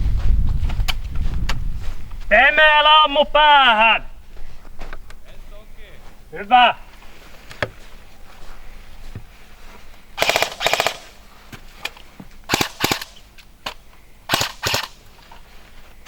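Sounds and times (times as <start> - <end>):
airsoft gun firing bursts: 10.2 - 11.3, 12.5 - 13.3, 14.3 - 15.1.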